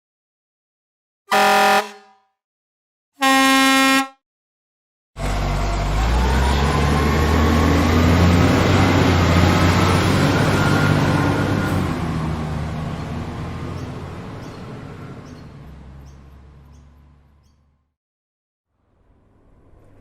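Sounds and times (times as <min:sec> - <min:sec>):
heavy truck passing: 0:05.2 - 0:17.8.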